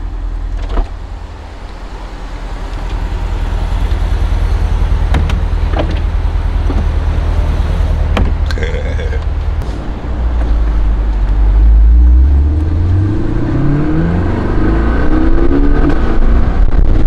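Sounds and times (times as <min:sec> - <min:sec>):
car engine idling: 0:00.0 - 0:12.8.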